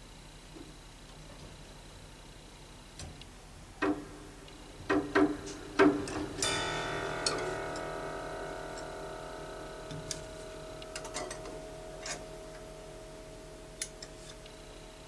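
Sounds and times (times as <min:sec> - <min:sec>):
piano mechanism clicks: 0:04.8 - 0:09.0, 0:09.9 - 0:12.7
grand piano notes: 0:04.9 - 0:13.7.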